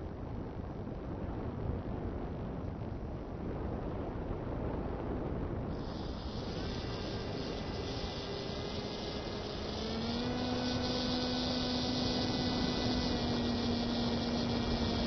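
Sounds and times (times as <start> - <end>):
model airplane motor droning: 5.7 - 15.0
steady hiss: 5.7 - 15.0.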